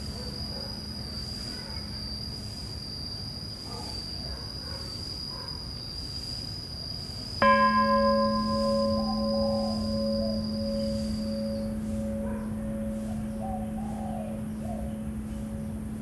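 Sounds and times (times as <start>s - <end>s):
insects chirping: 0.0s - 16.0s
temple bell ringing: 7.4s - 16.0s.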